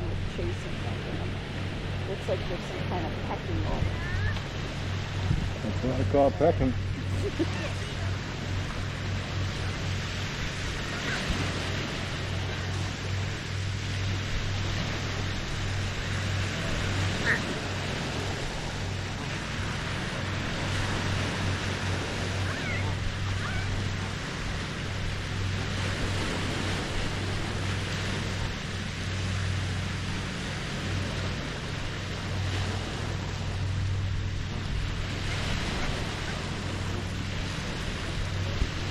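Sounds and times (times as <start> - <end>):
low hum: 0.0 - 38.9
waves lapping on shore: 0.0 - 38.9
bird calls: 22.4 - 23.8.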